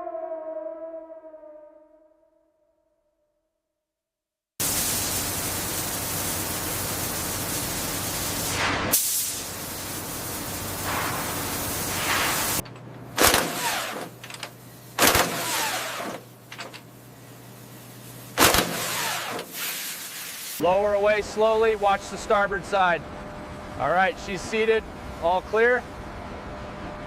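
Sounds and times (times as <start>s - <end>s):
loud rushing hiss: 4.6s - 21.0s.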